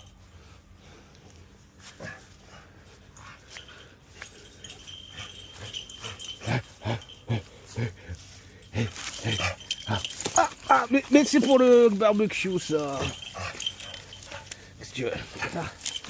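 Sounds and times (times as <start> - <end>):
dog sounds: 8.8 - 11.7, 12.6 - 16.0.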